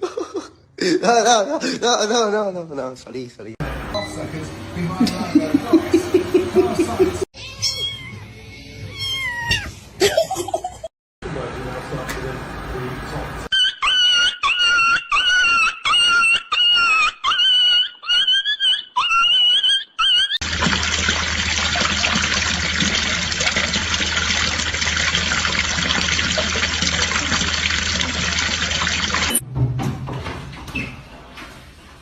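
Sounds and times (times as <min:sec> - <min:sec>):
high-pitched animal calls: 0:13.5 - 0:20.4
running water rushing: 0:20.4 - 0:29.4.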